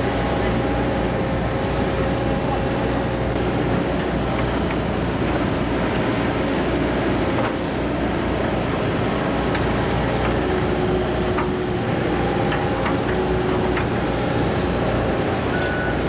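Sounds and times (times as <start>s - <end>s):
excavator diesel engine running: 0.0s - 16.0s.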